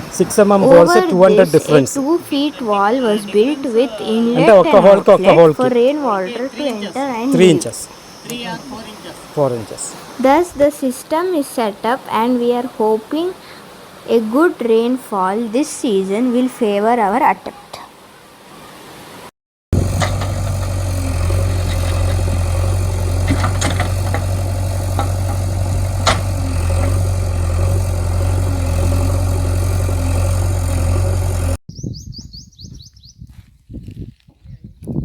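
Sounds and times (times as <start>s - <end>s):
heavy engine idling: 19.8s - 31.6s
bird chirping: 31.7s - 33.2s.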